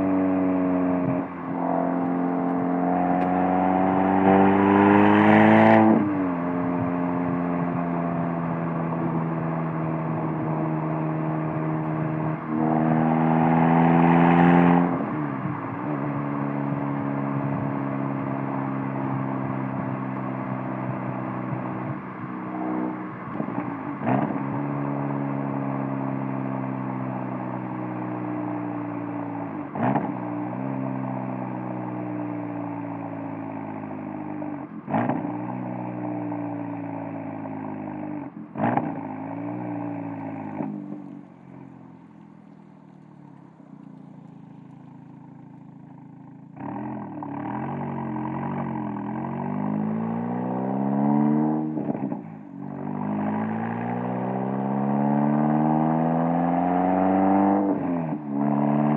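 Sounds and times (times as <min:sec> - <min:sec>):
car exhaust revving: 0:00.0 - 0:58.9
exhaust cracks: 0:40.1 - 0:48.6.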